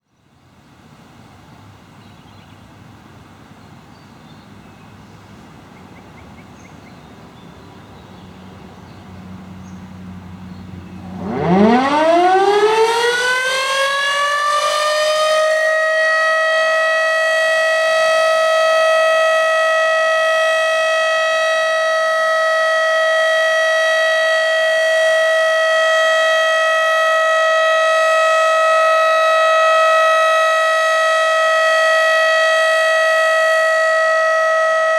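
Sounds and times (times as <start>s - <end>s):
warning siren wailing: 10.0s - 34.9s.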